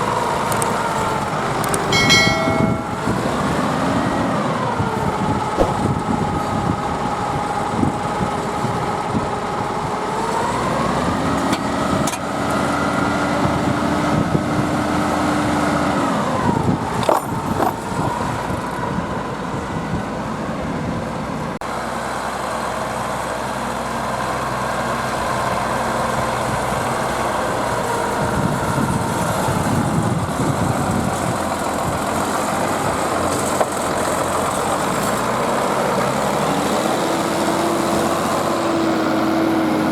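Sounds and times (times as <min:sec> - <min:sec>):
tractor diesel engine under load: 0:00.0 - 0:39.9
knocks: 0:05.6 - 0:06.0.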